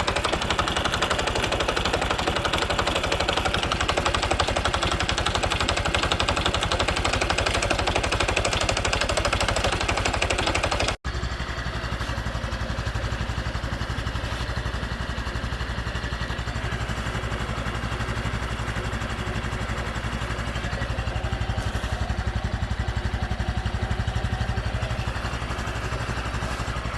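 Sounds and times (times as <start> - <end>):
motorcycle engine idling: 0.0 - 26.9.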